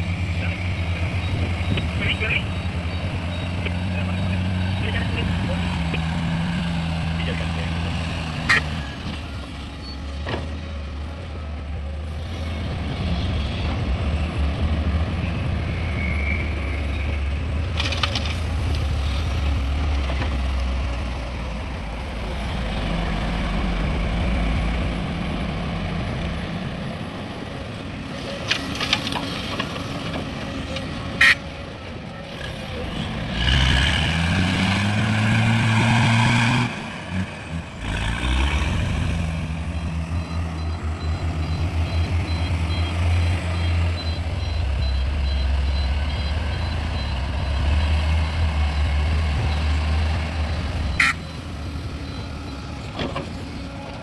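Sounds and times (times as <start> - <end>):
heavy diesel machinery running: 0.0 - 54.0
engine revving up: 32.3 - 51.4.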